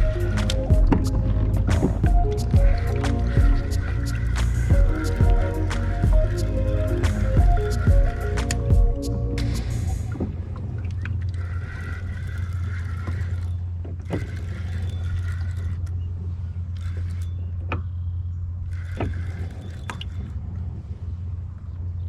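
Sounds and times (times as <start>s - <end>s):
steady low drone: 0.0s - 12.5s.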